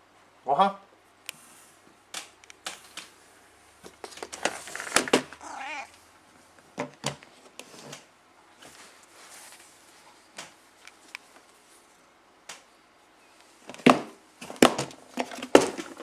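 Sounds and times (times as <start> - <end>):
cat meowing: 5.4 - 6.0.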